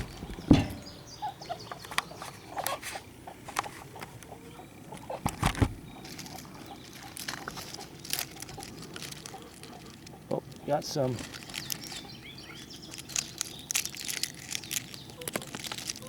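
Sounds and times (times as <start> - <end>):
twig cracking and clicking: 4.9 - 16.0.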